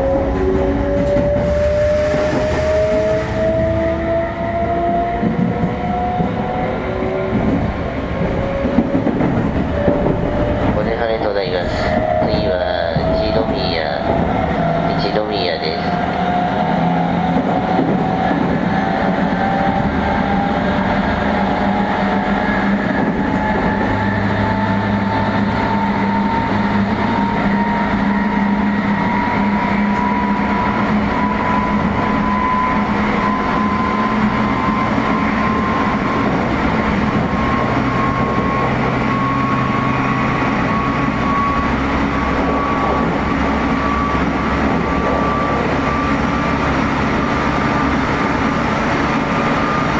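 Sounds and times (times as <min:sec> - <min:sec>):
wheel and rail rumble: 0:00.0 - 0:49.9
traction motor whine: 0:16.0 - 0:49.9.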